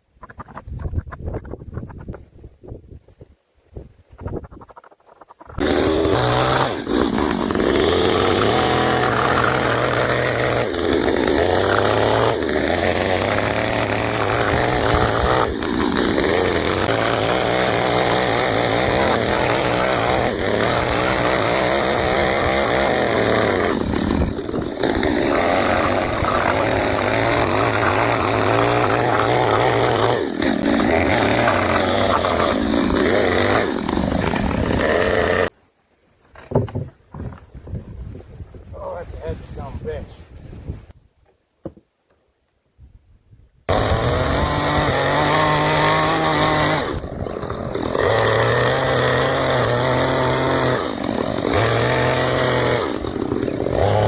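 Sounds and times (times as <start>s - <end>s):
chainsaw cutting wood: 5.4s - 35.5s, 36.4s - 36.9s, 43.7s - 54.0s.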